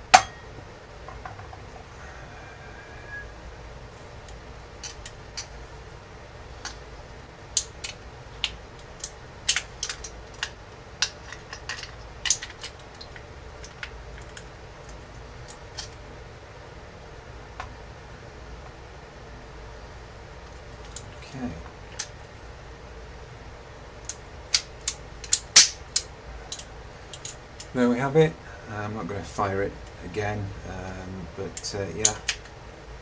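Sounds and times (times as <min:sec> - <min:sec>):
faint steady hum: 0:00.0 - 0:33.0
metallic clicks of revolver parts: 0:24.0 - 0:27.7.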